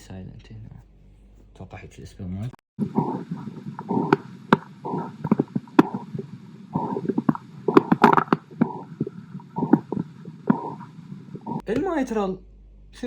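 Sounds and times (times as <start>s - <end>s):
heartbeat with murmur: 2.8s - 12.0s.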